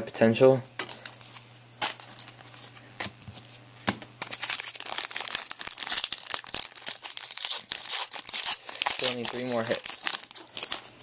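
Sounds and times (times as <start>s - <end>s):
wrapper crinkling and tearing: 4.2s - 11.0s.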